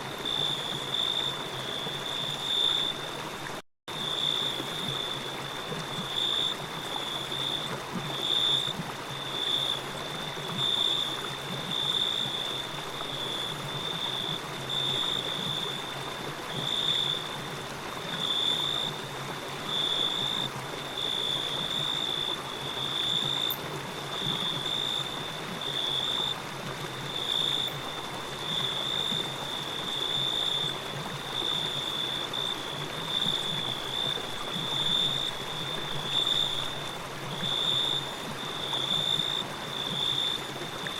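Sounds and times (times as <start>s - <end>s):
running water: 0.0s - 40.9s
insects chirping: 0.2s - 3.0s, 3.9s - 9.8s, 19.7s - 26.4s, 27.1s - 40.9s.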